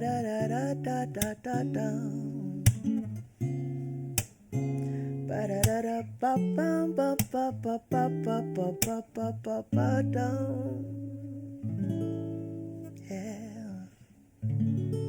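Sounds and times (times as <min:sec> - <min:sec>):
acoustic guitar strumming: 0:00.0 - 0:13.7, 0:14.5 - 0:15.0
person scat singing: 0:05.3 - 0:11.6.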